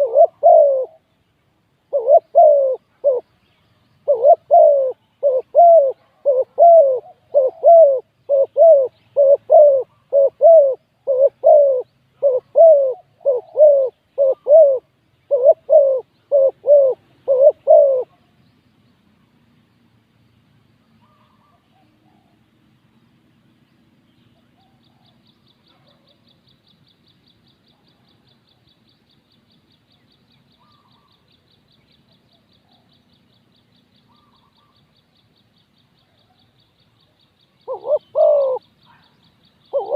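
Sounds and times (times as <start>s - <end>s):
dove cooing: 0.0s - 1.0s, 1.9s - 3.3s, 4.0s - 18.2s, 37.6s - 39.1s.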